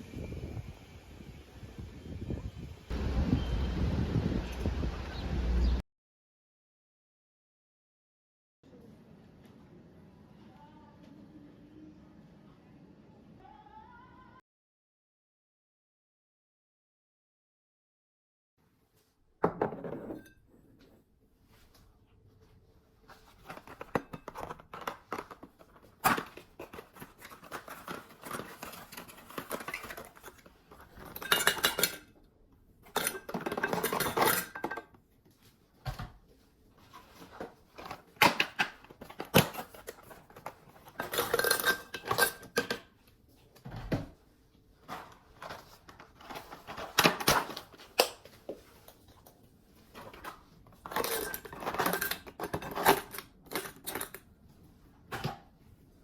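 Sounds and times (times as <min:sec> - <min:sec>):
scraping and rustling: 0:20.9 - 0:31.9, 0:44.6 - 0:55.0
dishes clinking: 0:31.0 - 0:32.1.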